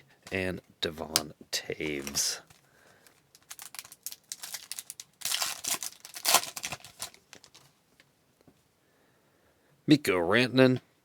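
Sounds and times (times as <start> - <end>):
crinkling rustling: 1.1 - 7.8.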